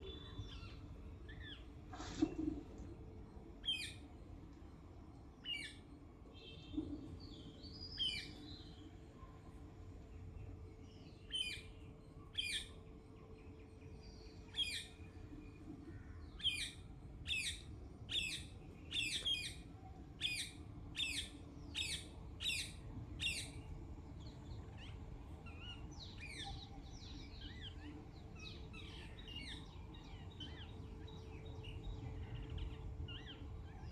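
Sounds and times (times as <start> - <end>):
steady low hum: 8.3 - 33.9.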